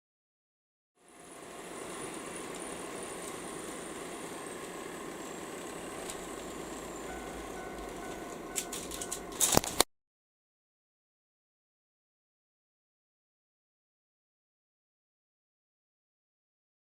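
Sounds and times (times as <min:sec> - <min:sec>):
faint motor whine: 0:01.0 - 0:09.8
faint steady tone: 0:01.0 - 0:09.8
model train rolling on track: 0:01.0 - 0:09.8.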